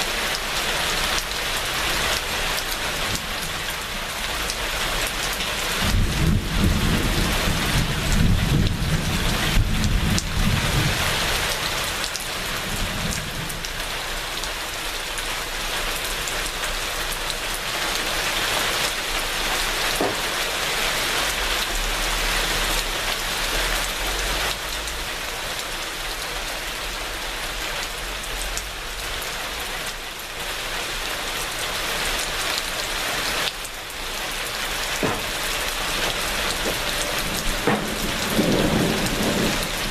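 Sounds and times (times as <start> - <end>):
heavy rain pattering: 0.0 - 39.9
low rolling thunder: 5.7 - 11.4, 35.0 - 39.9.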